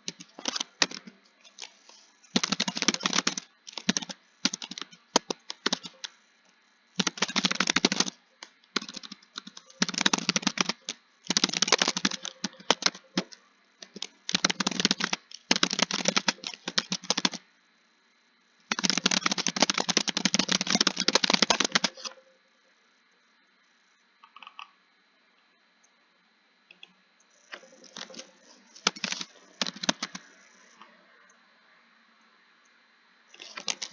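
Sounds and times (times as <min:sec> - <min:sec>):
computer keyboard typing: 0:00.0 - 0:06.2, 0:07.0 - 0:17.4, 0:18.7 - 0:22.1, 0:27.8 - 0:30.7, 0:33.4 - 0:33.9.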